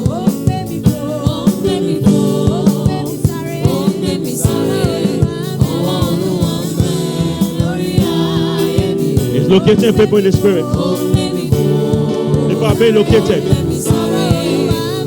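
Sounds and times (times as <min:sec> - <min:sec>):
steady percussive beat: 0:09.2 - 0:14.2
held chords: 0:09.2 - 0:14.7
person singing: 0:09.2 - 0:15.0.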